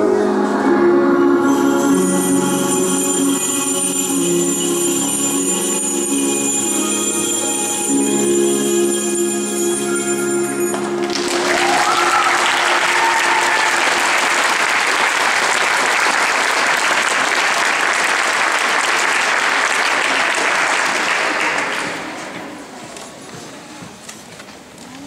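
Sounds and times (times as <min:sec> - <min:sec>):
audience applause: 0:11.0 - 0:22.3.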